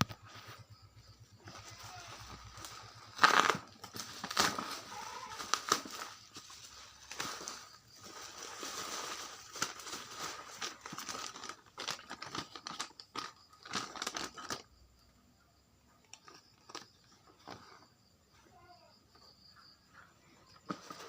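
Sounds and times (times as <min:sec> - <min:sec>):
packaging crinkling and tearing: 0:01.9 - 0:14.7.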